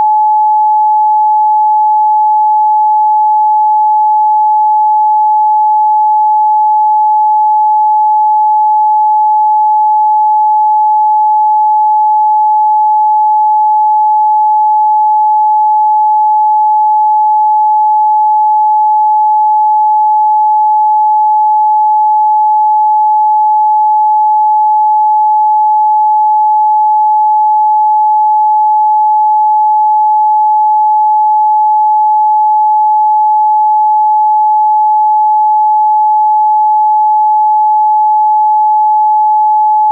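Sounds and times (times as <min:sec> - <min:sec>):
sine test tone: 0:00.0 - 0:39.9.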